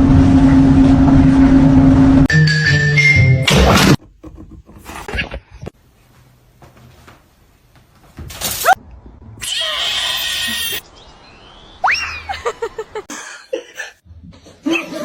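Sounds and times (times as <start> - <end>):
rasping noise: 3.8 - 5.2
soft knocks: 4.0 - 5.1.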